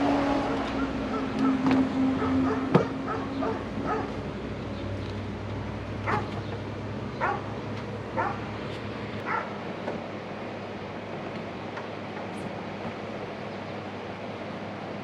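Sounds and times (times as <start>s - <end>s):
dog barking: 2.2s - 4.2s, 6.1s - 6.3s, 7.2s - 7.5s, 8.2s - 8.4s, 9.2s - 9.6s.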